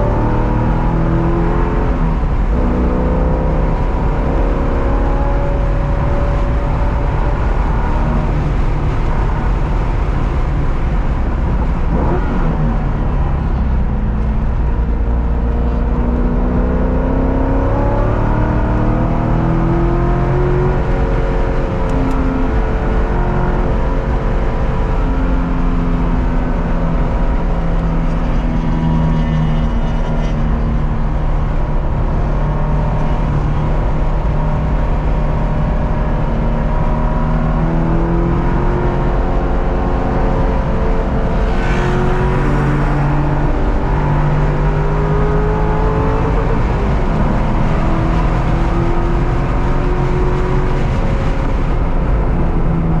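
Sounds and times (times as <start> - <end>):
car engine accelerating: 0.0 - 53.0
road and wind noise: 0.0 - 53.0.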